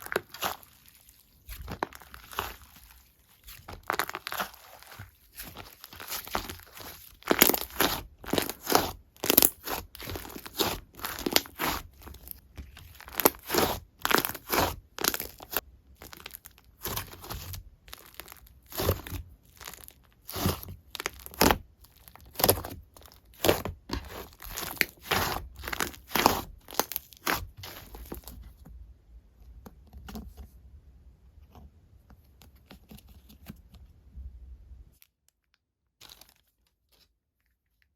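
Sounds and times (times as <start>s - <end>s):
slime squishing and popping: 0.0s - 28.2s.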